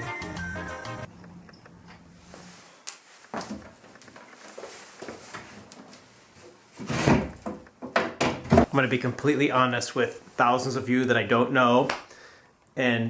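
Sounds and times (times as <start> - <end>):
cabinet clatter: 6.8 - 8.7
wooden knocks and clicks: 7.3 - 8.7.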